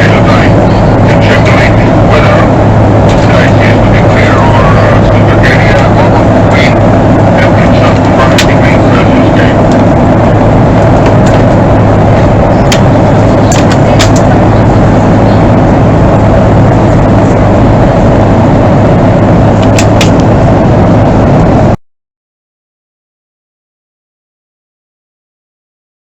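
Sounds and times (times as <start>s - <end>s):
airplane cabin engine noise: 0.0s - 21.8s.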